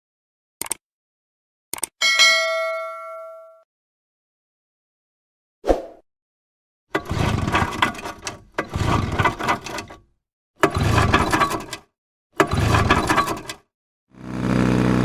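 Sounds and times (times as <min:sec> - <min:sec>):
outboard motor knocking: 0:14.1 - 0:15.0
outboard motor clattering: 0:14.2 - 0:15.0.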